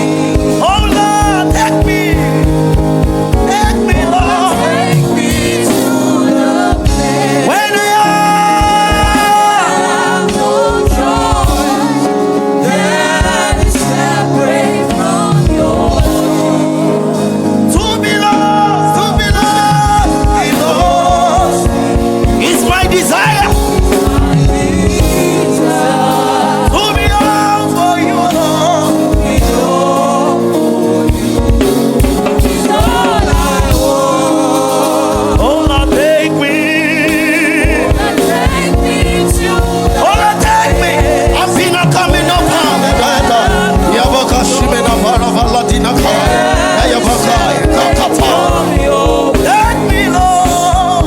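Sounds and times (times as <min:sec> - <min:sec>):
gospel worship music with singing: 0:00.0 - 0:51.0.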